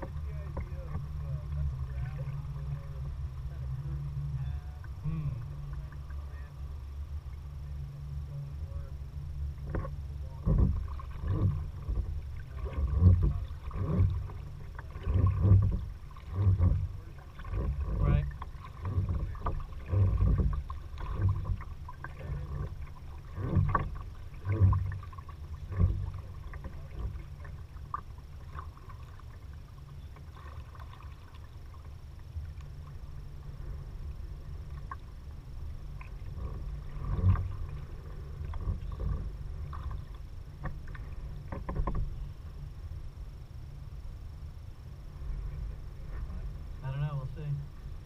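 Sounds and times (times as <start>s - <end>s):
steady low rumble: 0.0s - 48.0s
kayak paddle splashing in water: 9.6s - 42.2s.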